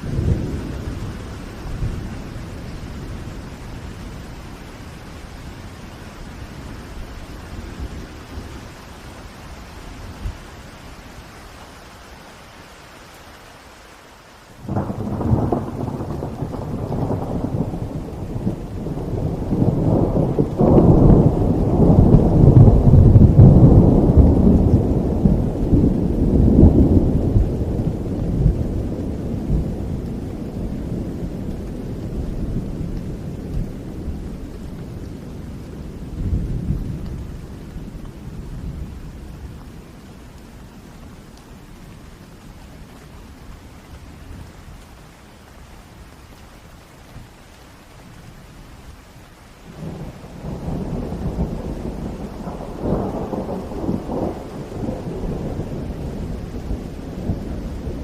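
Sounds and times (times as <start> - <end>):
thunder rumbling: 0.0 - 10.7, 14.6 - 45.0, 49.6 - 58.0
steady rain: 0.0 - 58.0.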